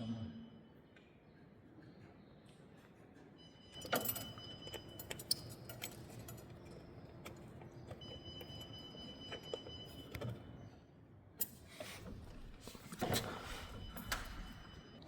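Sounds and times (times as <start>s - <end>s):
metal tools clinking: 3.8s - 8.8s.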